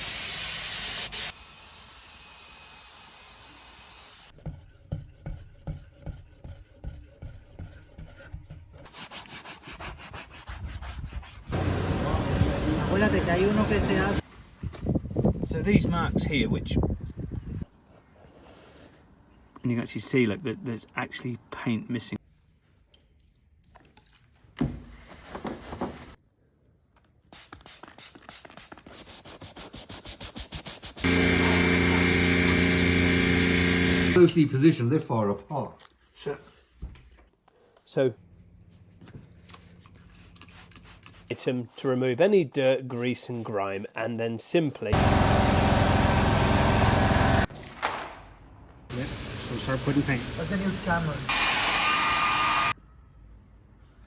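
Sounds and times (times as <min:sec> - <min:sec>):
spray hiss: 0:00.0 - 0:04.3, 0:48.9 - 0:51.3.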